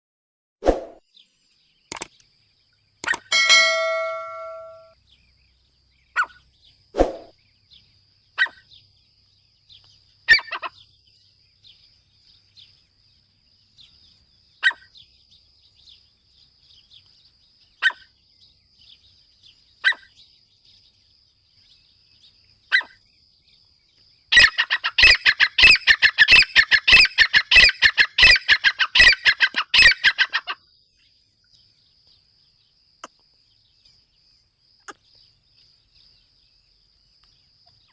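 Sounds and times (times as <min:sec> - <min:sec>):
francolin calling: 0:03.0 - 0:05.0, 0:24.3 - 0:30.7.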